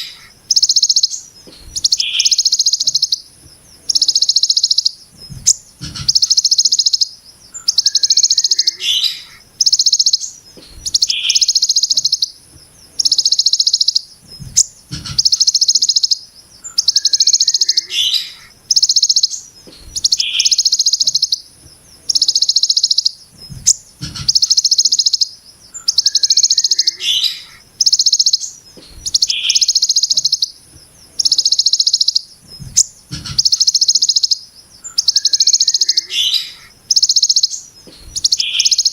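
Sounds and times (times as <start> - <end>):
bird singing buzzy trill: 0.0 - 38.9
sharp bird chirps: 0.0 - 38.9
faint low knocks: 14.2 - 15.4, 32.4 - 33.5.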